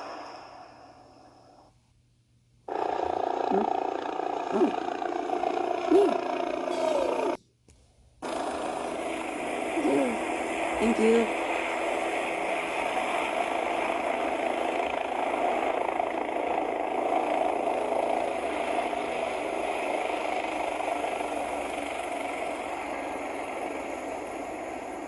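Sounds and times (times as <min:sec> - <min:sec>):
engine sound effect: 0:02.7 - 0:07.4.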